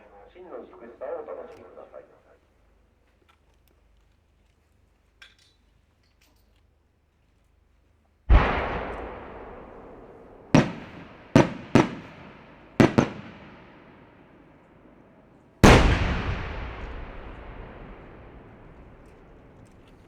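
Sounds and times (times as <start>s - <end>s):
firework shells bursting: 8.3s - 14.0s, 15.6s - 20.0s.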